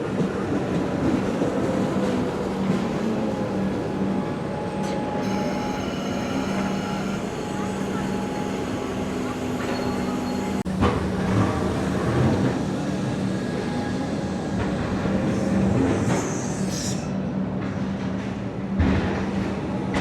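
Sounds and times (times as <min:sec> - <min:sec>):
electric train humming: 0:00.0 - 0:16.8
high squeal: 0:04.7 - 0:10.6, 0:15.2 - 0:17.2.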